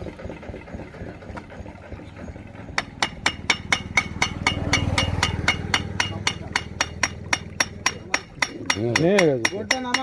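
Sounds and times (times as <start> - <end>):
low engine hum: 0.0 - 7.9
hammer blows on metal: 2.8 - 10.0.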